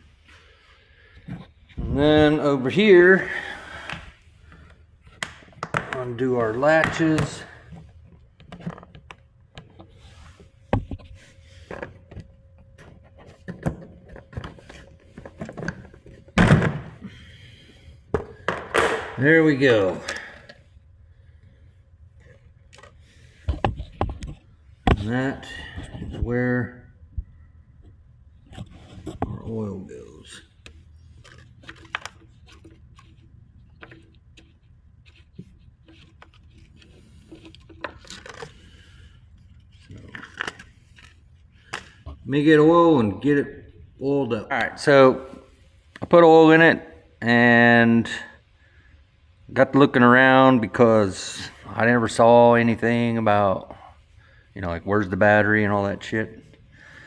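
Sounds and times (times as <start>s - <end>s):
low steady hum: 0.0s - 57.0s
hands handling plastic and metal parts: 3.8s - 16.8s, 30.3s - 42.2s.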